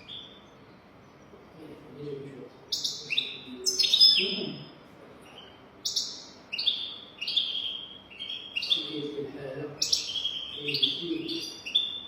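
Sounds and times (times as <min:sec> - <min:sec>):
goldfinch twittering song: 0:00.0 - 0:01.3, 0:02.7 - 0:04.7, 0:05.4 - 0:09.2, 0:09.8 - 0:12.0.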